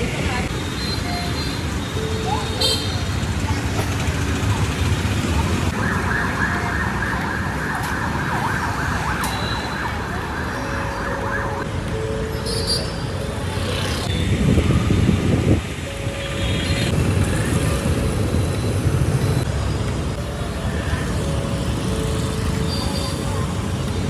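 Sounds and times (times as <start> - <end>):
road traffic noise: 0.0 - 24.0
emergency vehicle siren wailing: 4.6 - 19.5.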